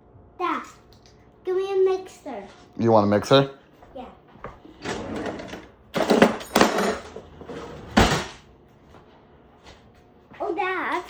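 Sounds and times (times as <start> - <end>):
kitchen things clattering: 4.8 - 8.4.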